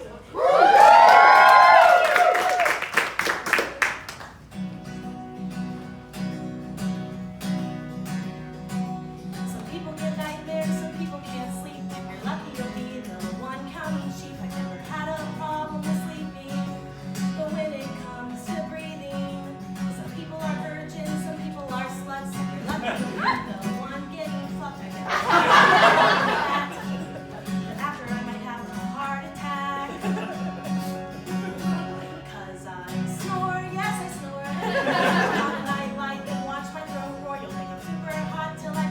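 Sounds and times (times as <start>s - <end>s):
audience cheering and clapping: 0.3s - 4.4s
acoustic guitar playing: 3.2s - 38.9s.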